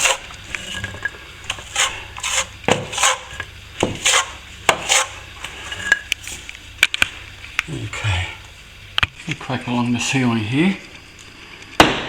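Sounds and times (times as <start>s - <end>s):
hand scraper scraping plaster: 0.0s - 8.6s.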